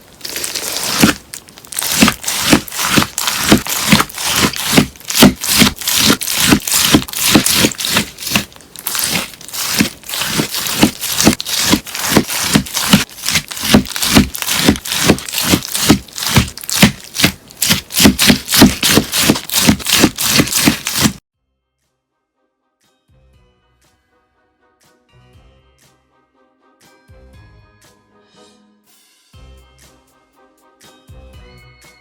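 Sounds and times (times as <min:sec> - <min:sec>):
slime being cut with crunchy crackle: 0:00.0 - 0:21.2.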